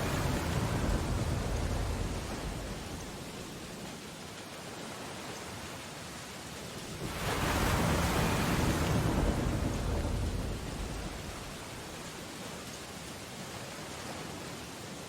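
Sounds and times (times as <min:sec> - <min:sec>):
deep rushing storm surge: 0:00.0 - 0:03.9, 0:06.9 - 0:12.2
rain on window glass: 0:00.0 - 0:13.2.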